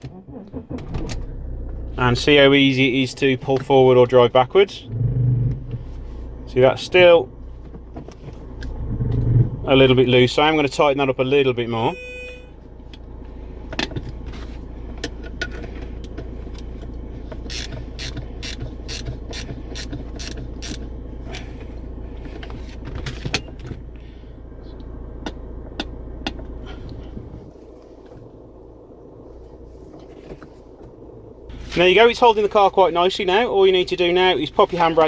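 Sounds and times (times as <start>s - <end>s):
car engine idling: 0.0s - 35.0s
handbrake ratchet clicks: 15.0s - 21.8s, 24.8s - 27.0s.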